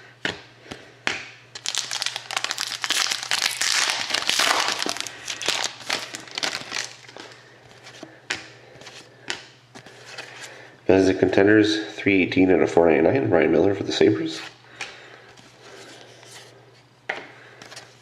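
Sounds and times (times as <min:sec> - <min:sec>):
foil wrapper crinkling and tearing: 0:01.5 - 0:07.4.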